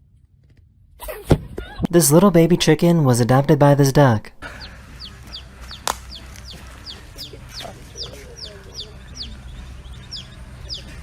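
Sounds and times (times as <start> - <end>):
baby chick peeping: 4.4 - 11.0.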